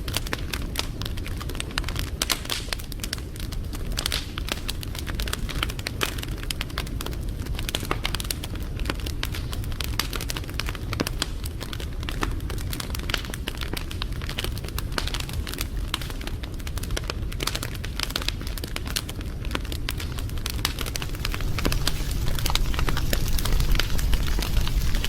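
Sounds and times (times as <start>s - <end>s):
wood fire crackling: 0.0s - 25.0s
low rumble: 20.2s - 25.0s.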